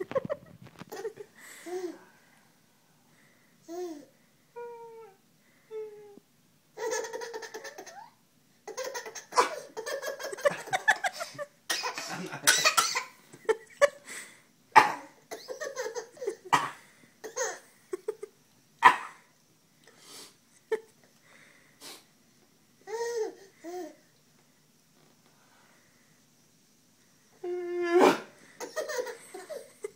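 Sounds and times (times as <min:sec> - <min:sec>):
baby laughing: 0:00.1 - 0:02.0, 0:06.8 - 0:12.8, 0:15.3 - 0:16.5, 0:28.6 - 0:29.9.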